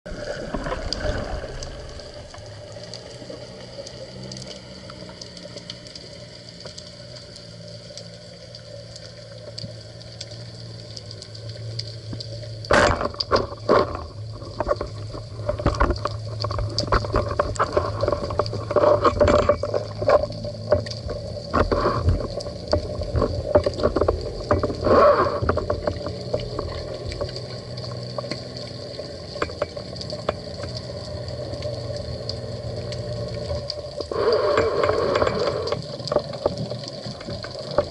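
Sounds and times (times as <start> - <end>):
gurgling bubbles: 0.1 - 4.4, 12.1 - 37.9
knocks and clicks underwater: 0.1 - 7.4, 9.5 - 37.9
low underwater hum: 0.1 - 37.9.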